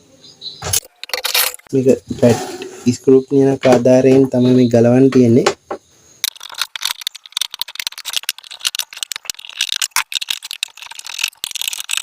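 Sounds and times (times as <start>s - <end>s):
screwdriver clicking and rattling: 0.8s - 1.6s, 6.2s - 12.0s.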